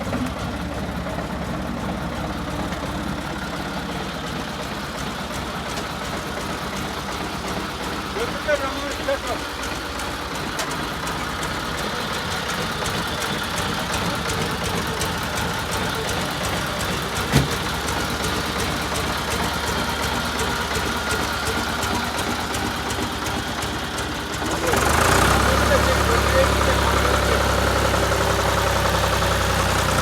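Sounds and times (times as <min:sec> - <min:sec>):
diesel tractor engine idling: 0:00.0 - 0:30.0.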